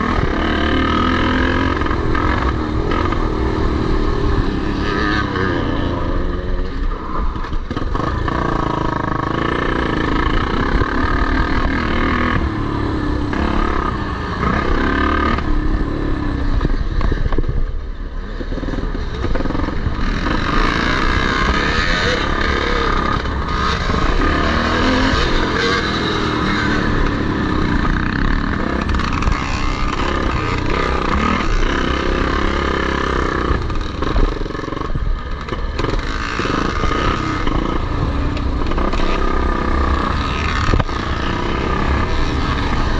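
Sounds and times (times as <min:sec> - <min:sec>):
motocross bikes revving: 0:00.0 - 0:17.3, 0:18.0 - 0:42.9.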